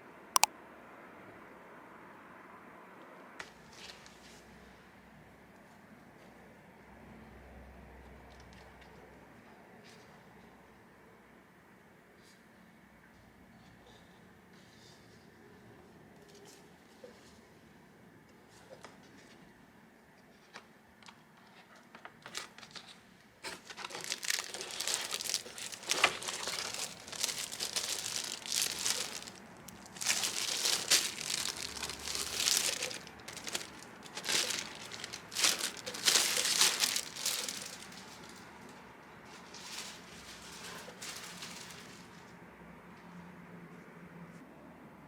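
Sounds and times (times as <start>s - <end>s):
wrapper crinkling: 23.5s - 42.3s.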